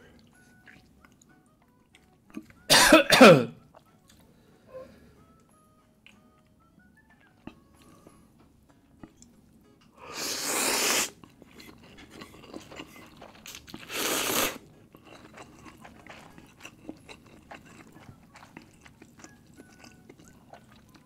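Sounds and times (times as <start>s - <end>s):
soft chewing: 0.0s - 2.7s, 3.6s - 10.0s, 11.1s - 21.0s
person slurping noodles: 10.0s - 11.2s, 13.8s - 14.6s.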